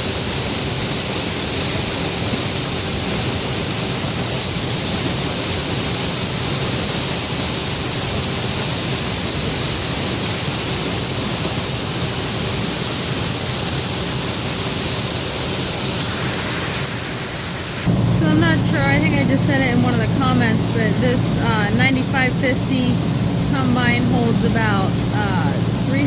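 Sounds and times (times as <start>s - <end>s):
combine harvester running: 0.0s - 26.0s
faint low hum: 17.9s - 26.0s.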